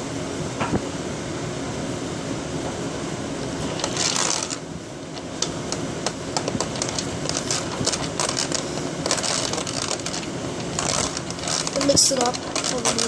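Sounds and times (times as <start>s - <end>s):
steady low hum: 0.0s - 13.0s
scraping: 3.6s - 4.7s, 6.0s - 13.0s.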